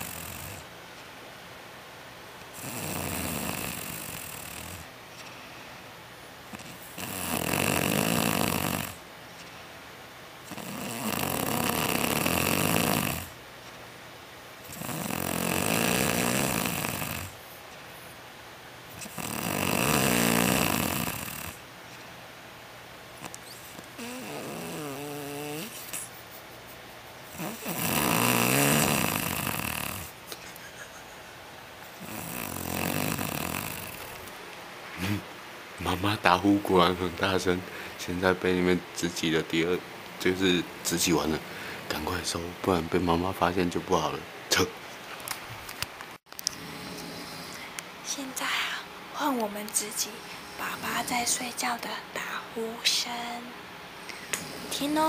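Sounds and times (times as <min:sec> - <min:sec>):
woman snoring loudly: 0:00.0 - 0:00.7, 0:02.6 - 0:04.9, 0:06.5 - 0:09.0, 0:10.5 - 0:13.4, 0:14.7 - 0:17.4, 0:19.0 - 0:21.6, 0:23.2 - 0:26.1, 0:27.3 - 0:30.2, 0:32.0 - 0:34.2, 0:50.5 - 0:51.5.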